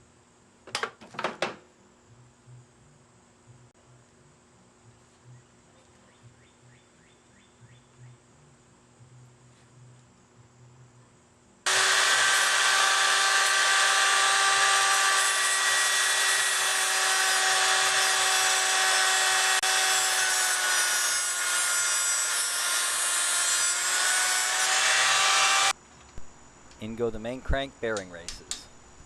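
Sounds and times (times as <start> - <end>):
power tool grinding: 11.7 - 25.8.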